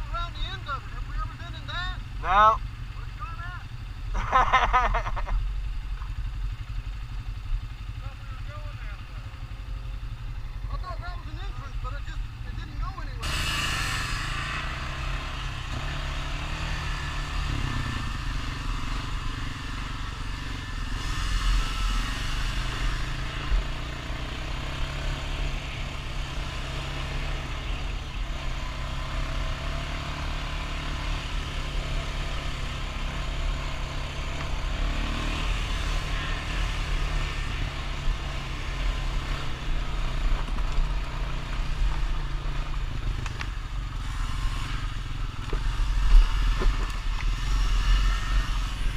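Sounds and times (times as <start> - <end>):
atv engine running: 0.0 - 48.9.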